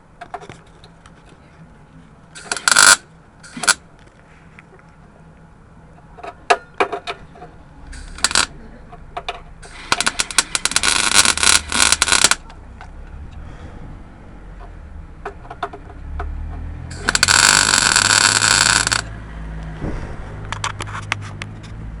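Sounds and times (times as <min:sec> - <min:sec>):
electric welder crackling: 0:02.4 - 0:03.8, 0:08.0 - 0:08.5, 0:09.6 - 0:12.5, 0:16.9 - 0:19.1
welder tack blips: 0:08.0 - 0:08.5, 0:09.6 - 0:12.5, 0:16.9 - 0:19.1.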